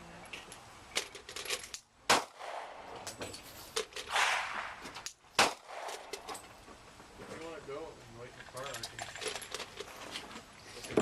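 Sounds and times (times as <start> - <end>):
loud gunshot: 2.1 - 3.0, 4.1 - 4.8, 5.4 - 6.1.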